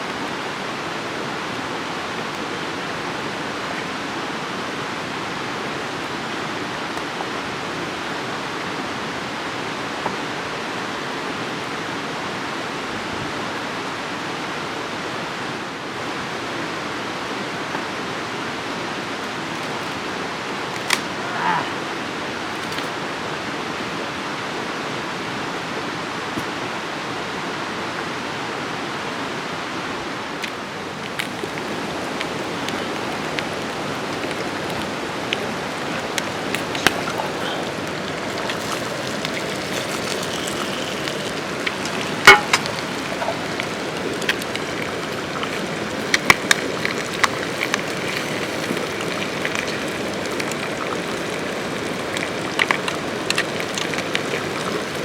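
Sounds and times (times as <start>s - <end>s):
campfire crackling and popping: 0.0s - 7.4s, 18.9s - 21.4s, 22.0s - 23.2s, 30.3s - 55.0s
steady hiss: 30.2s - 55.0s.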